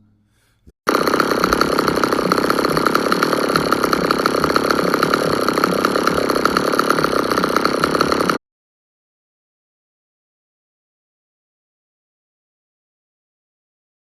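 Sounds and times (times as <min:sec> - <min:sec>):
chainsaw engine idling: 0:00.9 - 0:08.4.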